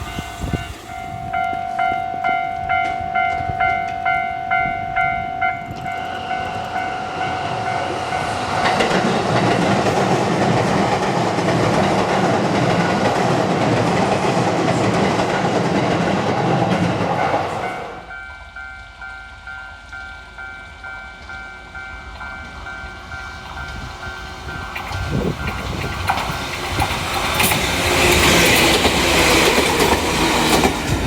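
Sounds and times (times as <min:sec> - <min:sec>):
steady ringing tone: 0:00.0 - 0:09.4
level-crossing alarm bell clanging: 0:00.0 - 0:13.3, 0:15.1 - 0:31.0
train wheels on rail: 0:00.0 - 0:31.0.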